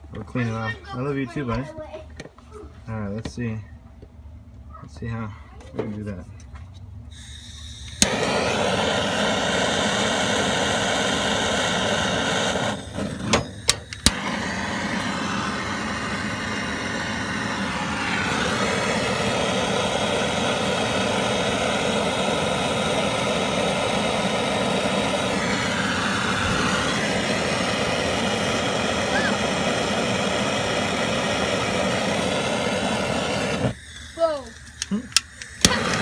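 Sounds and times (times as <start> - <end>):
propane torch hissing: 7.1 - 36.0
torch igniter clicking: 7.8 - 36.0.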